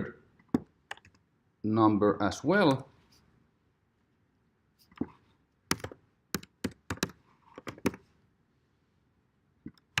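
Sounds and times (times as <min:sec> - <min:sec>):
typing on a computer keyboard: 0:05.7 - 0:08.0.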